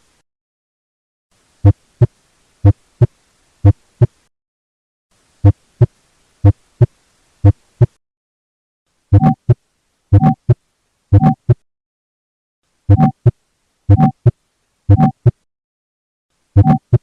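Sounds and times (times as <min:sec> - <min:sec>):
heartbeat through stethoscope: 0:09.2 - 0:11.6, 0:12.9 - 0:13.3, 0:13.9 - 0:14.3, 0:14.9 - 0:15.4, 0:16.6 - 0:17.0.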